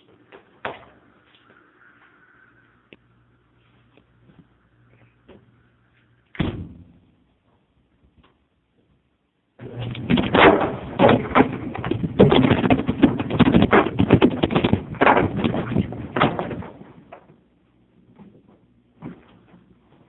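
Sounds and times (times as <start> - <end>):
rocks crashing and clattering: 9.6 - 17.3.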